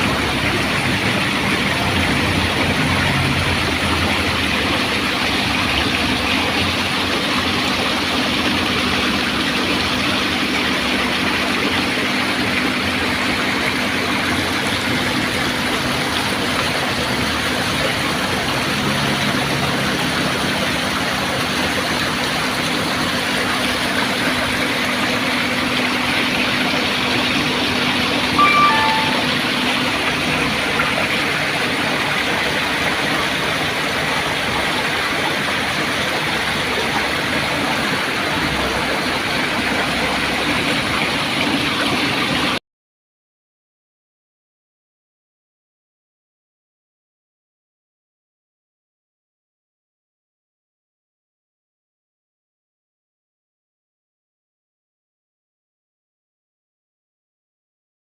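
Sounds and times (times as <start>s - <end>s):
engine running steadily: 0.0s - 42.6s.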